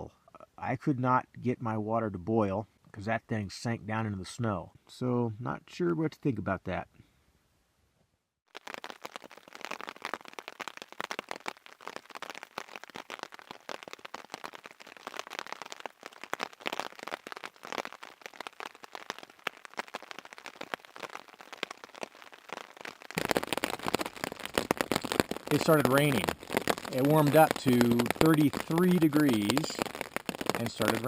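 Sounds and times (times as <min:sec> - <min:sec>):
rain on a tarp: 0:08.5 - 0:31.0.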